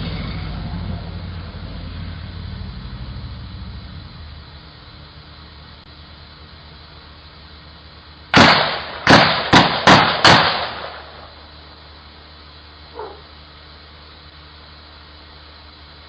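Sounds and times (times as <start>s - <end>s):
microphone hiss: 0.0s - 16.0s
gunshots: 8.3s - 11.3s.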